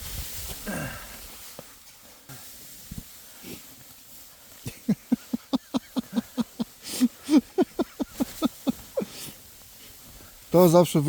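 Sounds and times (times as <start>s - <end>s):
person laughing in short bursts: 4.6s - 9.2s.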